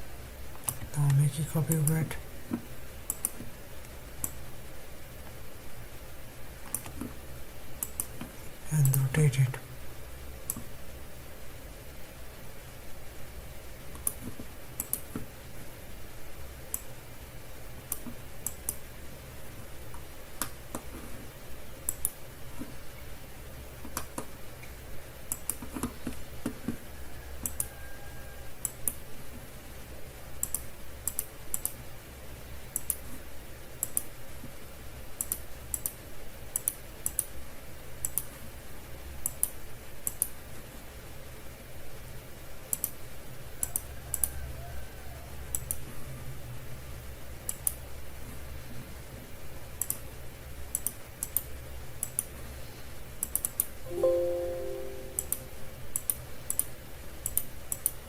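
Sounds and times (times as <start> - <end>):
mouse and keyboard clicking: 3.1 - 3.5, 7.8 - 8.2, 35.2 - 36.0, 38.0 - 38.3, 39.2 - 40.3, 42.7 - 43.0, 47.5 - 47.8, 49.8 - 50.0, 50.7 - 52.3, 56.0 - 58.0.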